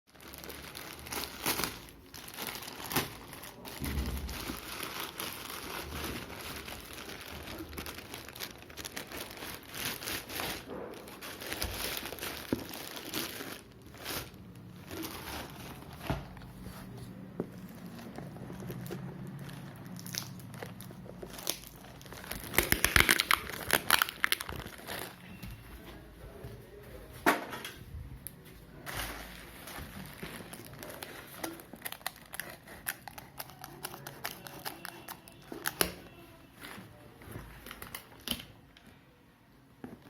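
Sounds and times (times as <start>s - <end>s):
packaging crinkling and rustling: 0.1s - 26.0s, 28.2s - 38.9s.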